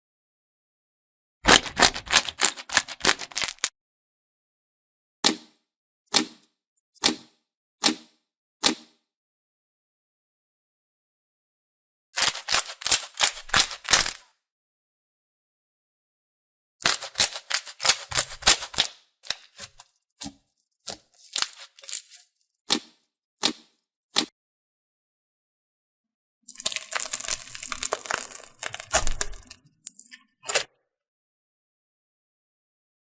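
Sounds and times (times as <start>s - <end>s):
slime crackling and popping: 1.5s - 3.7s, 12.2s - 14.2s, 16.8s - 19.8s, 20.9s - 22.2s, 26.5s - 29.6s.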